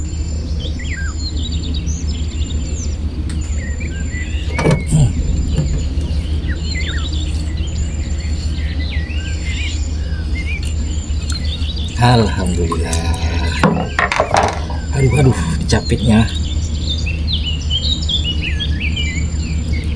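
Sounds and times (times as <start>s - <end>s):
small birds chirping: 0.0s - 19.9s
steady low rumble: 0.0s - 19.9s
brief thump: 4.5s - 6.1s.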